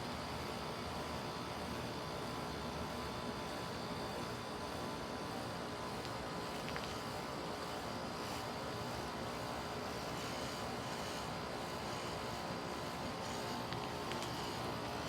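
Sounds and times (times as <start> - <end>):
heat pump unit running: 0.0 - 15.0.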